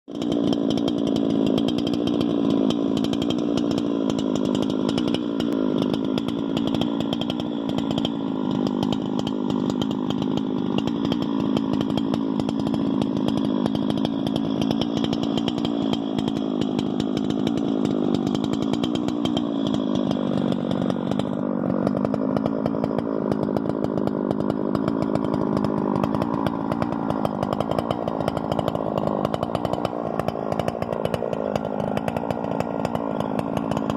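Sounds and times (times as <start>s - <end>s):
chainsaw engine under load: 0.1s - 33.9s.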